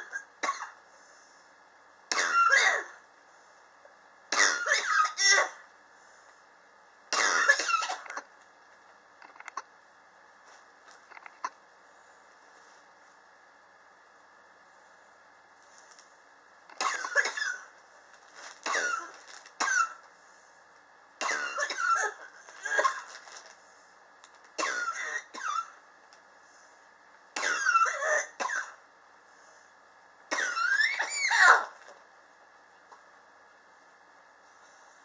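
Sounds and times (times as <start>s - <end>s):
man coughing: 7.1s - 8.2s, 16.8s - 17.7s.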